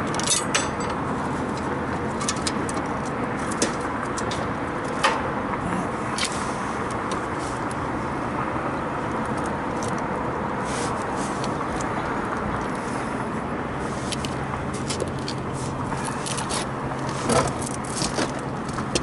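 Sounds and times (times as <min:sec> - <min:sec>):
outdoor background rumble: 0:00.0 - 0:19.0.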